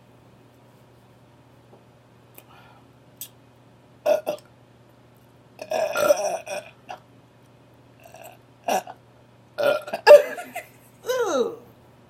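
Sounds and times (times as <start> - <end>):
person burping: 4.1 - 4.4, 5.6 - 7.0, 8.0 - 9.0, 9.6 - 10.5.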